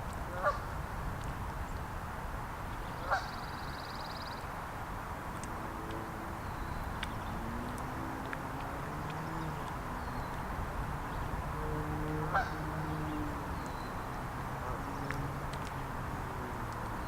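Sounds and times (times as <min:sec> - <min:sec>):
geese honking: 0:11.6 - 0:13.4.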